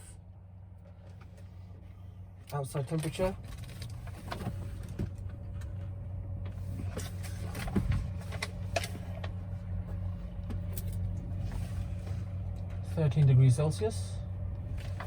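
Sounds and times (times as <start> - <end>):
low electrical hum: 0.0 - 15.0.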